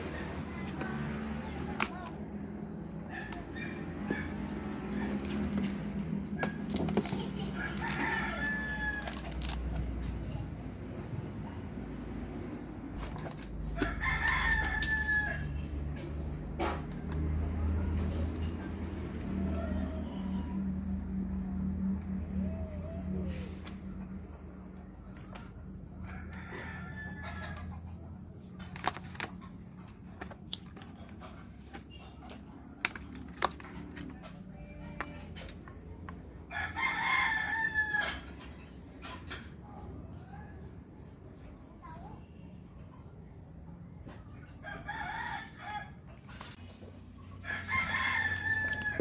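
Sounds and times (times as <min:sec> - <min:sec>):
rooster crowing: 0:07.4 - 0:09.3, 0:13.8 - 0:15.6, 0:26.0 - 0:27.7, 0:36.5 - 0:38.3, 0:47.4 - 0:49.0.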